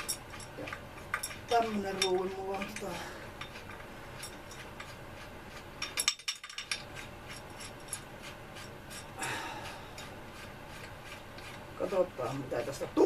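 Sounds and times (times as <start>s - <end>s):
small metal parts clicking: 0.0s - 4.9s, 5.8s - 8.0s
metal scraping: 0.0s - 12.9s
metal parts clinking: 5.8s - 6.9s.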